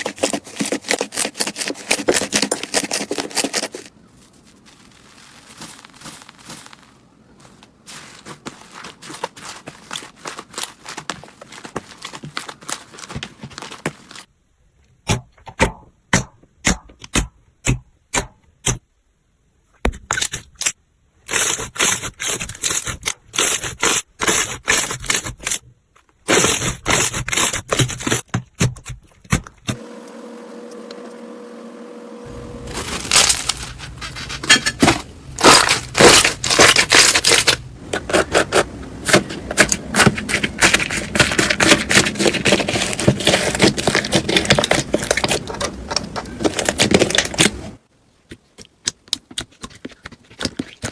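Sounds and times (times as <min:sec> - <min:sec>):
steady hum with held tone: 0:29.8 - 0:35.4.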